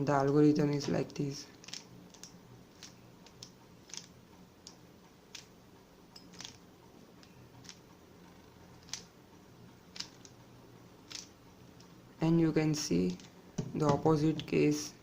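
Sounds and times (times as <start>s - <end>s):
puzzle cube plastic clicks: 1.6s - 5.5s, 6.3s - 6.6s, 7.2s - 7.8s, 8.7s - 9.1s, 9.9s - 10.4s, 11.0s - 11.3s, 13.0s - 13.3s.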